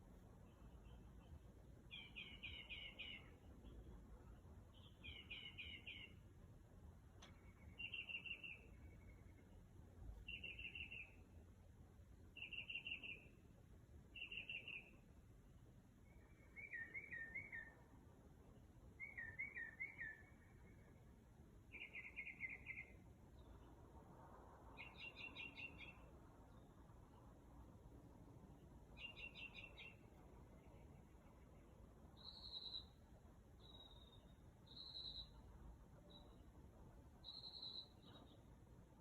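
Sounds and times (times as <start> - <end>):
songbird singing faintly: 0.0 - 39.0.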